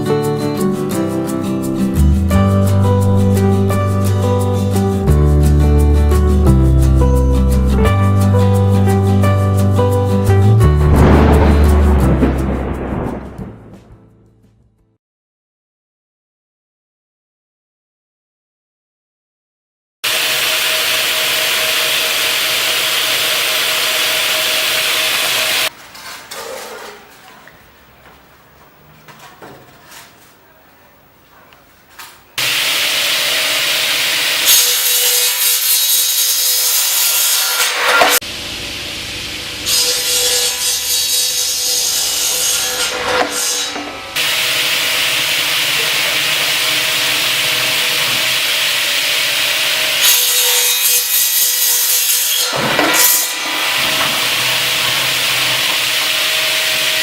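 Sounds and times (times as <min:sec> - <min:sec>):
power saw cutting bamboo: 0:20.0 - 0:25.7, 0:32.4 - 0:57.0.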